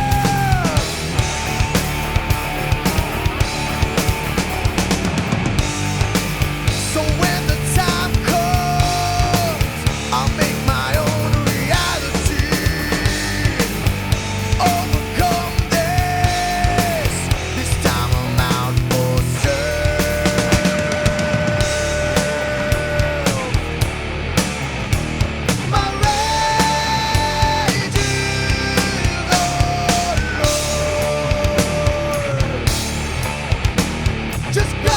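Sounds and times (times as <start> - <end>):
bass guitar: 0.0 - 34.9
distorted guitars: 0.0 - 34.9
driving drum beat: 0.0 - 34.9.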